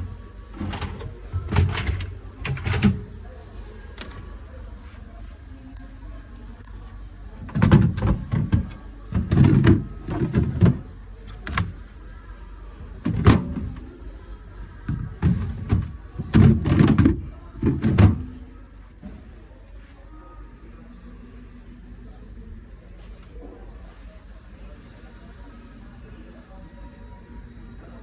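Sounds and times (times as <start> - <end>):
fridge doors thudding shut: 0.0 - 3.1, 7.4 - 11.8, 12.9 - 13.8, 14.9 - 18.4.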